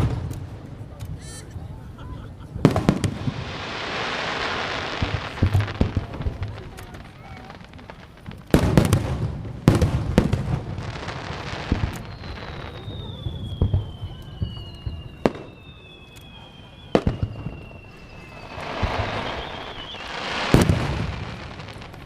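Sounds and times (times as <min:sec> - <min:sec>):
crackling hiss of fireworks: 0:00.0 - 0:22.0
falling firework whistle: 0:02.6 - 0:07.9, 0:10.8 - 0:22.0.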